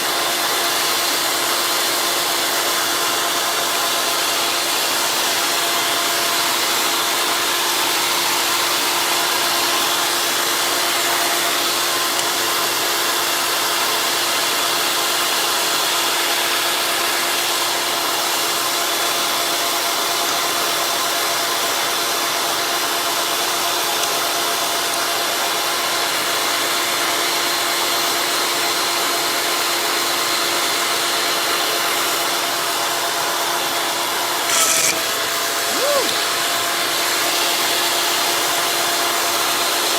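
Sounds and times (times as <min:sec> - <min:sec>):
electric motor humming: 0:34.4 - 0:37.0.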